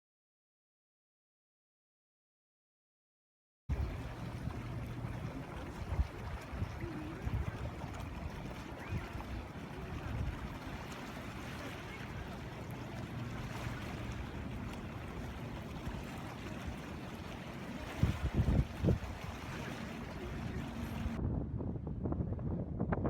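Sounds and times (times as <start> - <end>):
small waves on shore: 3.7 - 21.2
wind buffeting microphone: 3.7 - 23.0.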